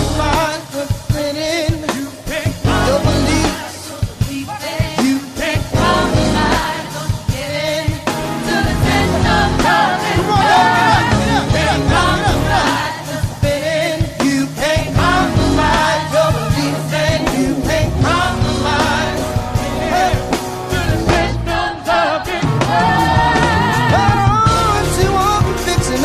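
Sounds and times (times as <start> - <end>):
rock music with sung vocal: 0.0 - 26.0.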